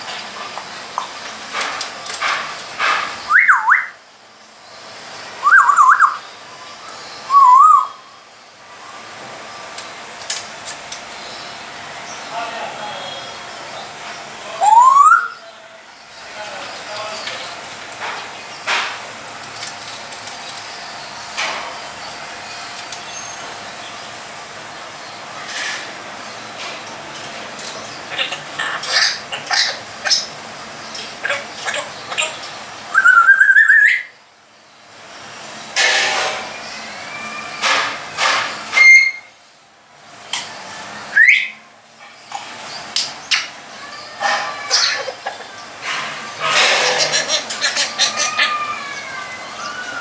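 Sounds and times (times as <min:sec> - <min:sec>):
parrot squawking: 0:03.3 - 0:04.0, 0:05.4 - 0:06.2, 0:14.6 - 0:15.5, 0:28.0 - 0:30.4, 0:31.2 - 0:34.1, 0:43.3 - 0:45.6, 0:46.3 - 0:50.0
parrot whistling: 0:03.3 - 0:04.0, 0:05.4 - 0:06.2, 0:07.3 - 0:08.0, 0:14.6 - 0:15.4, 0:32.9 - 0:34.1, 0:38.7 - 0:39.3, 0:41.1 - 0:41.6
scratchy noises: 0:45.8 - 0:48.6.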